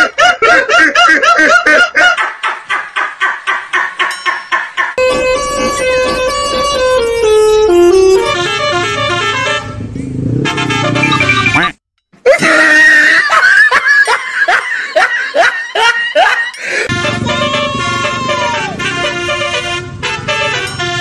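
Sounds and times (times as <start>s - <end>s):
musical bus horn melody: 5.0s - 11.7s, 16.8s - 21.0s
short falling horn toots: 5.0s - 11.8s, 16.9s - 21.0s.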